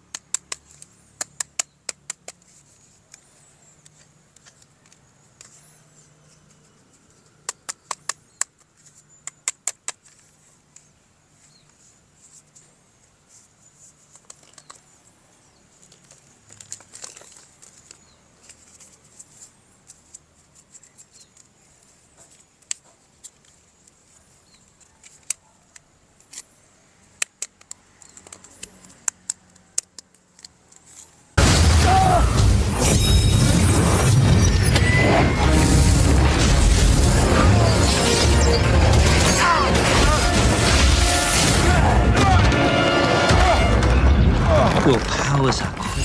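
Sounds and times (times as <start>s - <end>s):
sharp plastic clicks: 0.0s - 5.6s, 6.4s - 11.0s, 14.1s - 14.9s, 15.8s - 26.5s, 27.1s - 31.2s
packaging crinkling: 15.7s - 21.5s
loud music with heavy booms: 34.9s - 44.3s.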